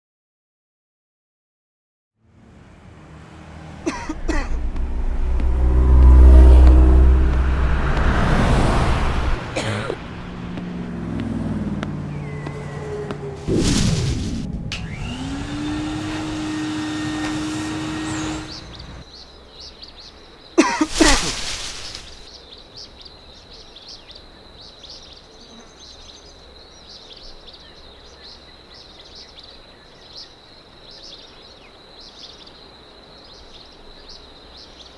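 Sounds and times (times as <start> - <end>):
whoosh with sliding tones: 2.2 - 9.5
steady rushing noise: 2.6 - 11.0, 20.9 - 22.3.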